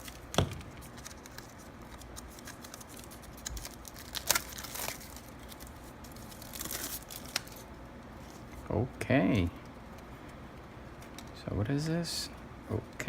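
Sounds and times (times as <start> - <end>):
plastic packaging crinkling: 0.0 - 8.4.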